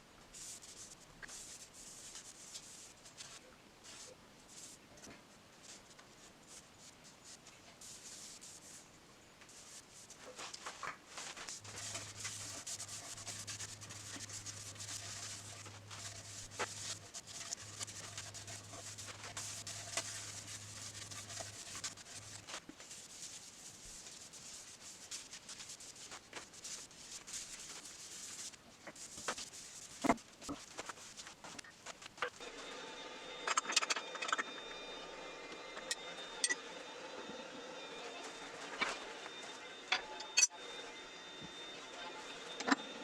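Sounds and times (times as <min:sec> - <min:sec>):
sandpaper hissing on turning wood: 0:11.3 - 0:31.3
low hum: 0:32.4 - 0:43.0.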